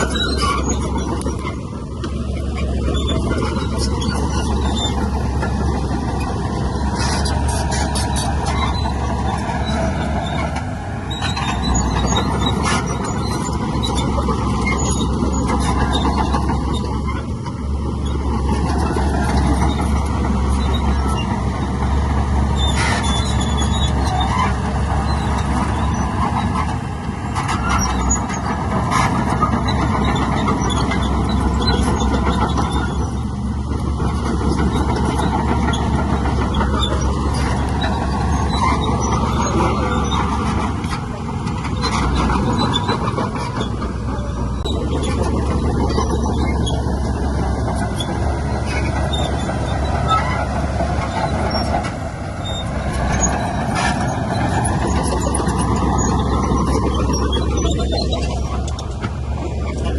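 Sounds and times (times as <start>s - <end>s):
diesel engines rumbling: 0.0s - 59.9s.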